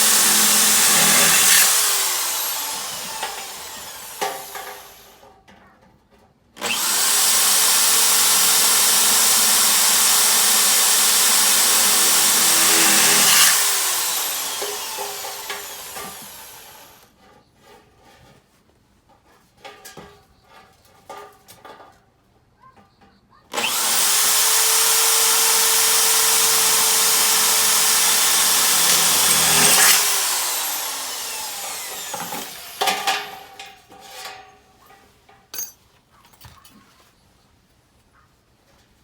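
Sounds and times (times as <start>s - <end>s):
power tool whining: 0.0s - 5.2s, 6.6s - 17.1s, 23.6s - 33.8s
handling knocks and clatter: 17.2s - 22.1s, 31.6s - 37.0s.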